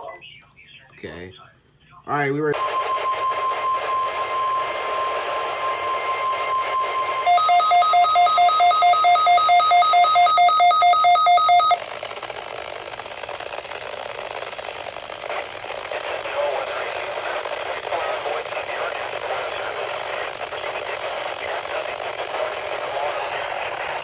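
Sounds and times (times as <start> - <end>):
steady high electronic tone: 2.5 - 11.8
radio static: 2.5 - 24.0
two-note electronic alarm beeping: 2.6 - 11.8.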